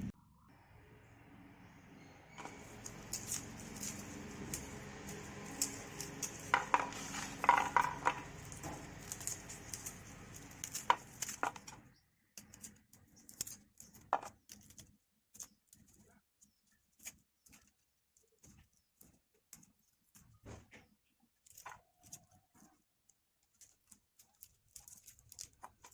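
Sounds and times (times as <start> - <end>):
utensil tapping in a pan: 2.4 - 11.7.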